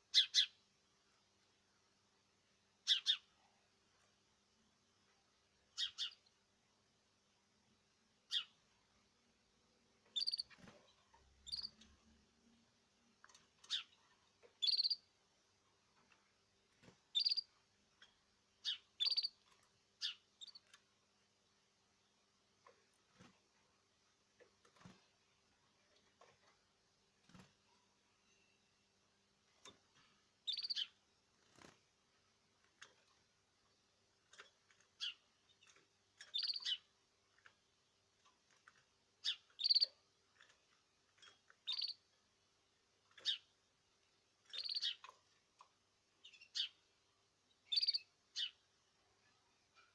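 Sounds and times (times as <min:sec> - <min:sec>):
faint steady hum: 0:00.0 - 0:49.9
bird chirping: 0:00.1 - 0:00.6, 0:02.8 - 0:03.3, 0:05.8 - 0:06.3, 0:08.3 - 0:08.6, 0:10.0 - 0:11.9, 0:13.6 - 0:15.1, 0:17.1 - 0:20.8, 0:30.4 - 0:31.0, 0:34.3 - 0:36.9, 0:39.2 - 0:40.5, 0:41.2 - 0:42.1, 0:43.1 - 0:43.5, 0:44.4 - 0:45.2, 0:46.2 - 0:46.8, 0:47.5 - 0:48.6.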